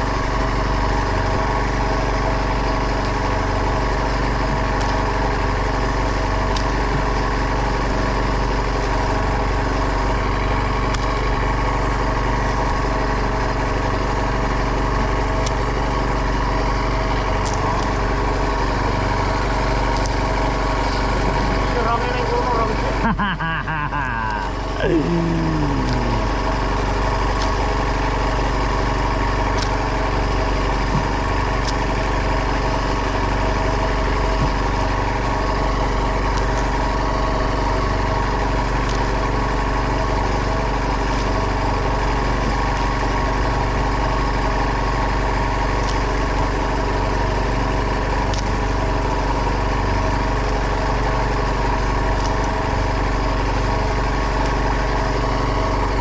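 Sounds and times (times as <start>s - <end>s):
boat engine humming: 0.0s - 56.0s.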